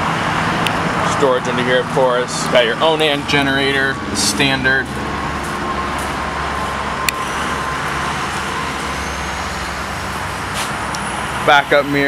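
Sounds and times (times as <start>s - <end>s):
road traffic rumble: 0.0s - 12.0s.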